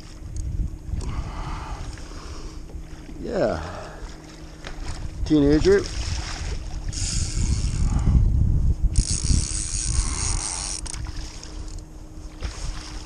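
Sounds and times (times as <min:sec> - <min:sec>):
low handling rumble: 0:00.0 - 0:13.0
fishing reel clicking: 0:06.9 - 0:08.0, 0:08.9 - 0:11.8.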